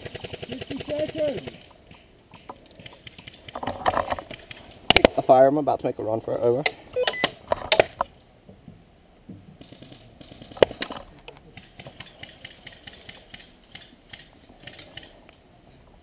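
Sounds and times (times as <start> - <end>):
gear and gun rattling: 0.0 - 1.8, 2.5 - 5.1.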